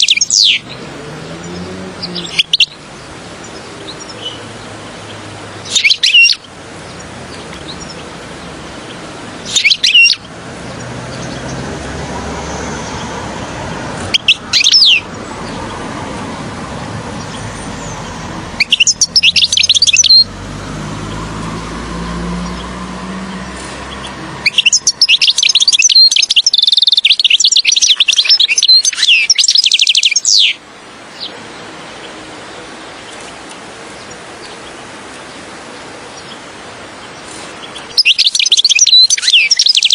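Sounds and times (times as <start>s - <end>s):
goldfinch singing: 0.0s - 11.7s, 14.0s - 15.9s, 17.0s - 31.4s, 37.0s - 39.9s
low background noise: 0.0s - 39.9s.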